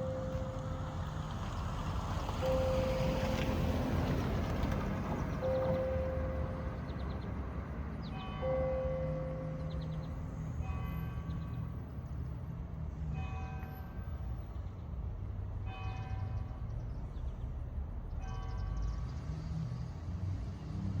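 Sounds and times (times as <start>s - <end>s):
church bell tolling: 0.0s - 1.0s.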